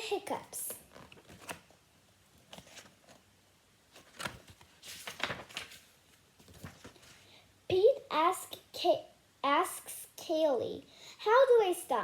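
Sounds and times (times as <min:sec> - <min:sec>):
paper book page turning: 0:00.8 - 0:01.7, 0:02.4 - 0:03.2, 0:03.9 - 0:07.2.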